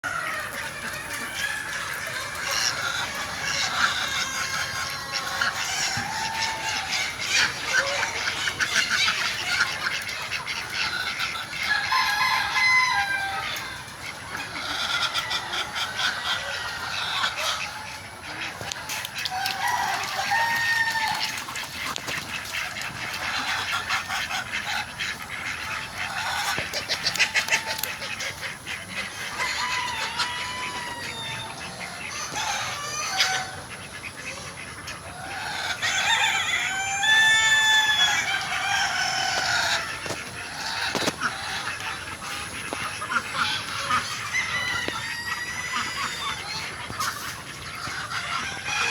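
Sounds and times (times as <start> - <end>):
chickens clucking: 0.0 - 48.9
rooster crowing: 11.7 - 13.8, 19.3 - 21.4, 29.4 - 31.7, 35.2 - 41.0, 44.0 - 46.4.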